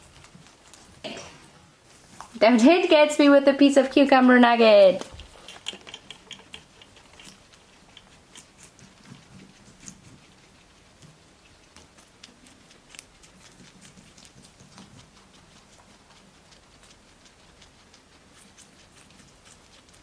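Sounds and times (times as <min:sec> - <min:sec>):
guinea pigs chewing cucumber: 0:00.0 - 0:20.0.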